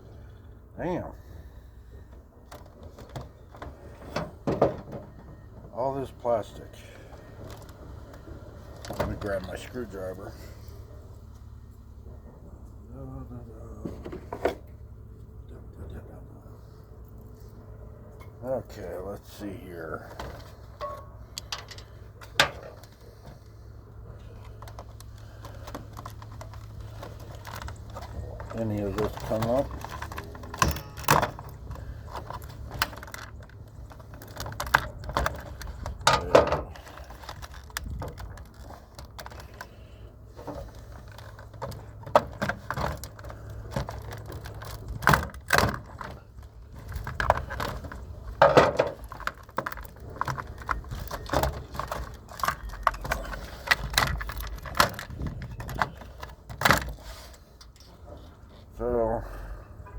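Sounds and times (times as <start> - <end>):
low steady hum: 0.0 - 59.9
plastic parts clicking and rattling: 24.3 - 58.6.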